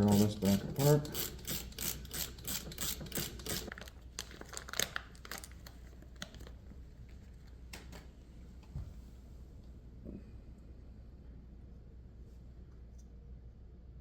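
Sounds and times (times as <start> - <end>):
ratchet wrench clicking: 0.1 - 3.7.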